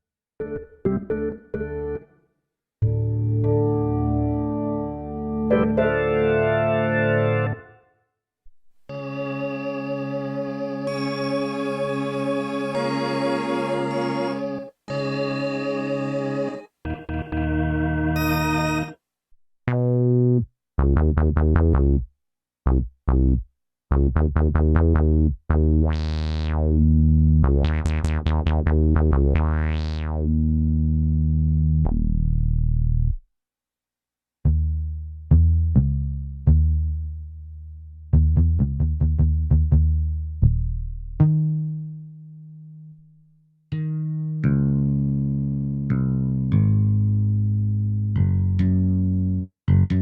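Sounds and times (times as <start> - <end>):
synthesizer notes and chords: 2.8 - 8.0, 8.9 - 19.0, 24.5 - 33.2.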